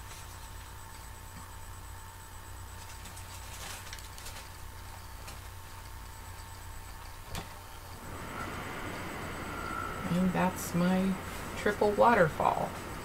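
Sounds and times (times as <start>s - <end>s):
steady low hum: 0.0s - 13.0s
paper pages rustling: 2.7s - 5.5s.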